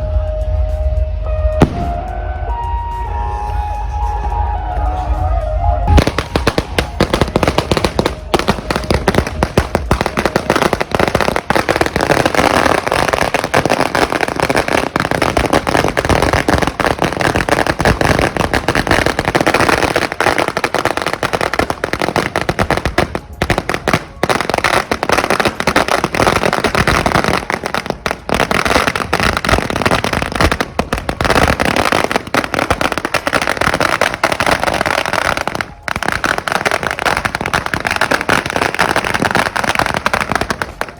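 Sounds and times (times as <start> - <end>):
fireworks and firecrackers banging: 0.0 - 40.9.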